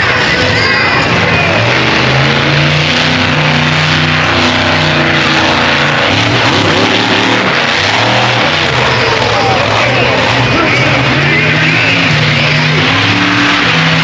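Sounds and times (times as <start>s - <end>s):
dense background noise: 0.0s - 14.0s
large engine revving: 0.0s - 14.0s.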